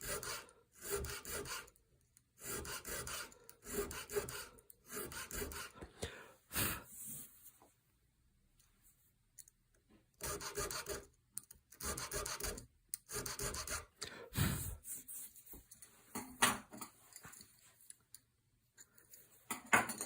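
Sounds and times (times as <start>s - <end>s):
tool rasping on wood: 0.0s - 1.7s, 2.4s - 5.8s, 10.2s - 11.0s, 11.8s - 14.7s.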